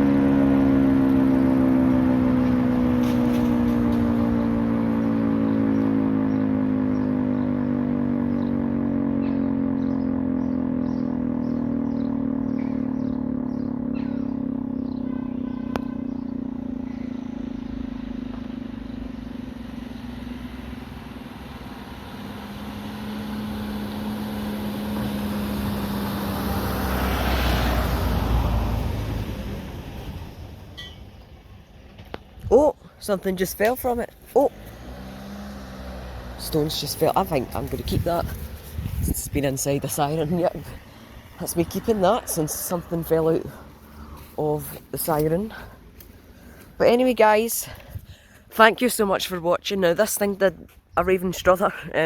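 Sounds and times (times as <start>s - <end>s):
motor siren winding down: 0.0s - 29.5s
rumbling noise: 36.2s - 46.0s.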